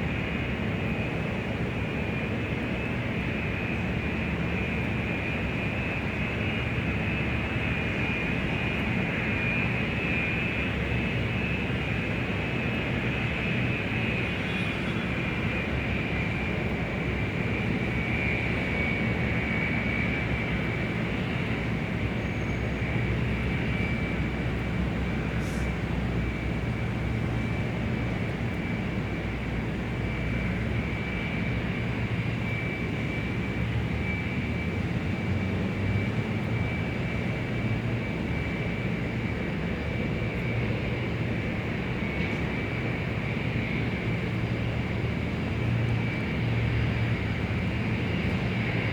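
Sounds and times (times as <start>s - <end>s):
jet engine drone: 0.0s - 48.9s.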